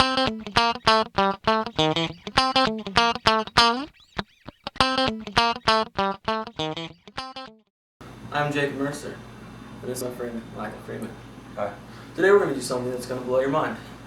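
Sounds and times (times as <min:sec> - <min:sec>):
plucked guitar riff: 0:00.0 - 0:07.7.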